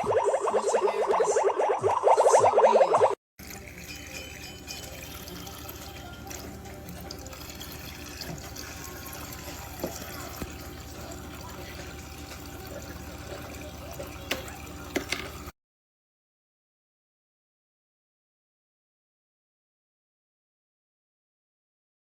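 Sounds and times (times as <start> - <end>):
water running into plastic basin: 3.4 - 15.5.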